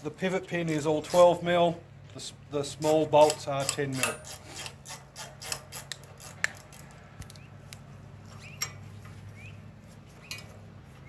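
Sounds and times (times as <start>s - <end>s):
spanner clicking on metal: 0.6s - 1.4s, 2.7s - 7.4s.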